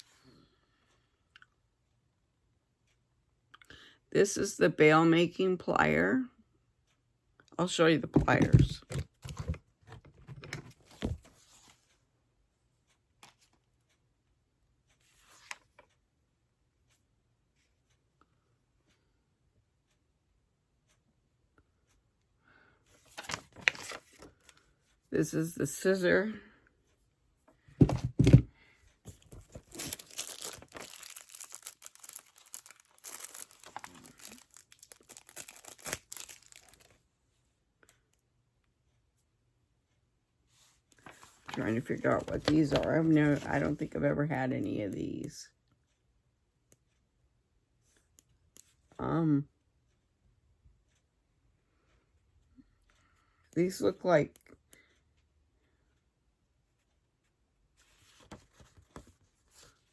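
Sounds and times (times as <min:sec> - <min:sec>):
packaging rustling: 0:23.1 - 0:24.3, 0:29.1 - 0:37.0, 0:41.0 - 0:43.8.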